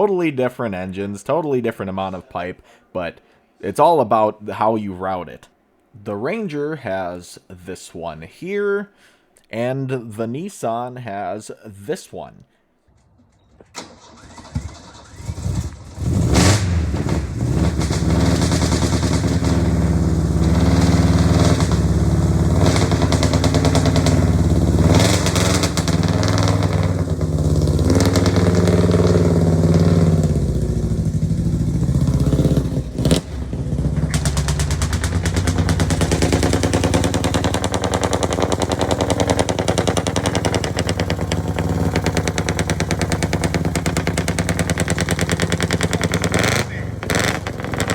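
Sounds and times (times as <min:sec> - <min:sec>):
pickup engine revving and idling: 0:15.2 - 0:47.9.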